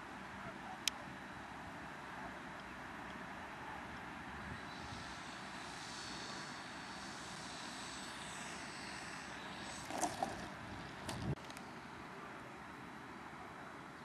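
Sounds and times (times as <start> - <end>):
model airplane engine: 4.3 - 12.2.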